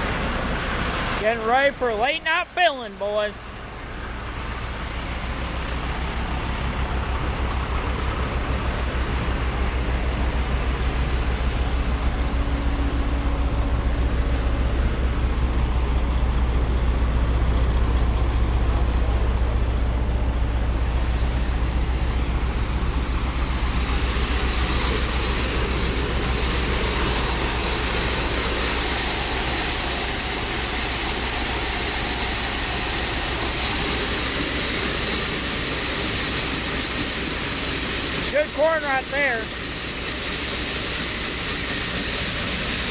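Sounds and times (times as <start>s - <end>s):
farm vehicle engine rumbling: 0.0s - 42.9s
high hiss: 20.8s - 42.9s.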